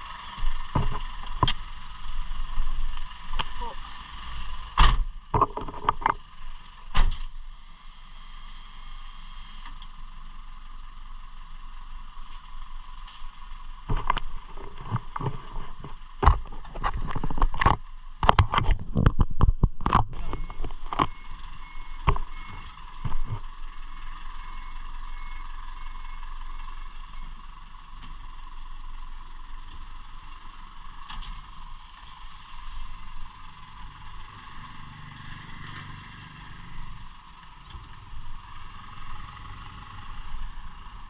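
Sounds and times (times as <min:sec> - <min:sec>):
fire truck engine rumble: 0:00.0 - 0:08.1, 0:08.9 - 0:41.0
sharp knocks and rattles: 0:04.8 - 0:06.3.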